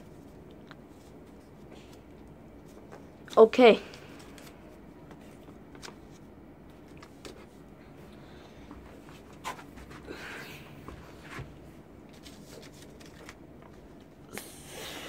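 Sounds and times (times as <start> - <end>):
soft paper rustle: 11.2 - 14.1
crisp paper crackles: 12.1 - 13.8.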